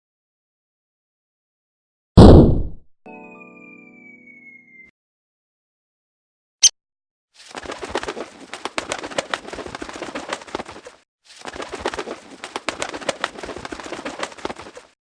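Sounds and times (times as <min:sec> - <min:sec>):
bird clicks and flutters: 0:07.4 - 0:14.9.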